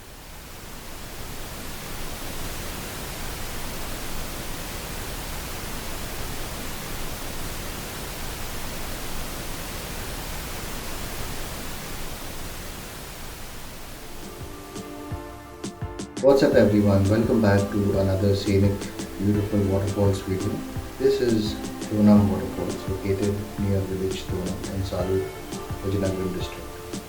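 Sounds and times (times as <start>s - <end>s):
waterfall roaring: 16.2s - 27.0s.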